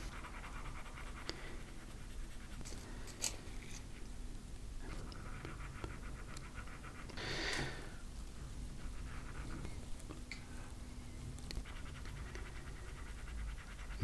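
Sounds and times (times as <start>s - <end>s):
pencil scratching on paper: 0.0s - 3.9s, 4.8s - 7.2s, 8.6s - 10.0s, 11.4s - 14.0s.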